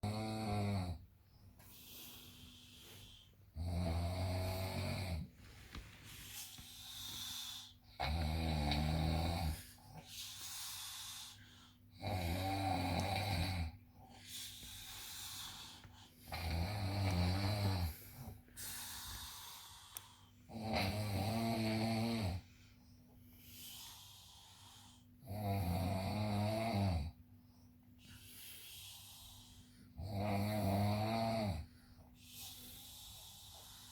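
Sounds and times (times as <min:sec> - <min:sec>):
person snoring: 0:00.0 - 0:01.0, 0:03.5 - 0:05.3, 0:07.5 - 0:09.7, 0:12.0 - 0:13.8, 0:15.0 - 0:22.4, 0:23.7 - 0:27.2, 0:28.6 - 0:31.7
quiet breaths: 0:00.0 - 0:33.9.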